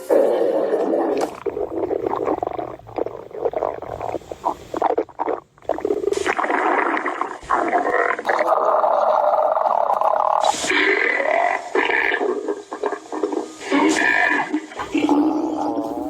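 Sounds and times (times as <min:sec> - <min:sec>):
stomach growling: 0:00.0 - 0:16.0.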